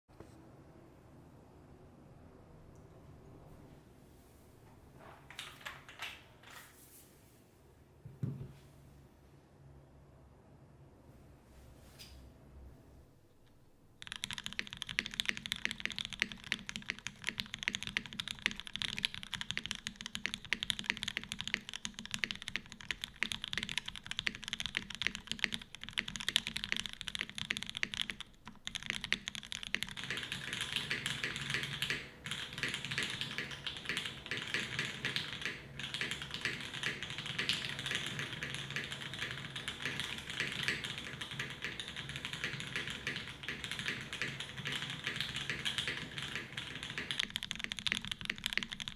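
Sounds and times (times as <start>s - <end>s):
mechanical keyboard typing: 14.0s - 48.9s.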